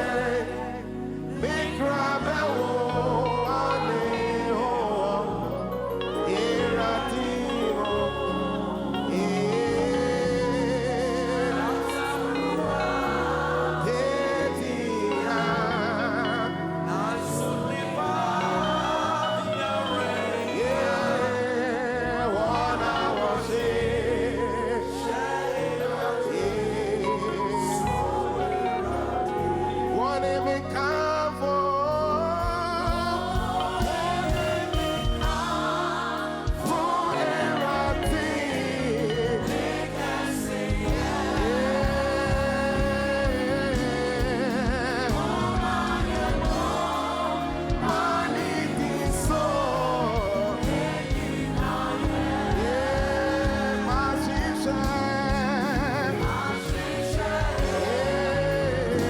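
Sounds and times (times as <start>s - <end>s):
voices singing worship song: 0.0s - 59.0s
instrumental accompaniment with beat: 32.4s - 59.0s.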